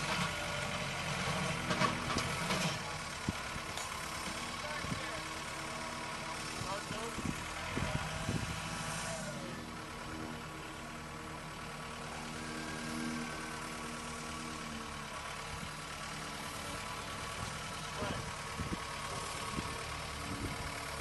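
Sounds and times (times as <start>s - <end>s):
engine running at low speed: 0.0s - 21.0s.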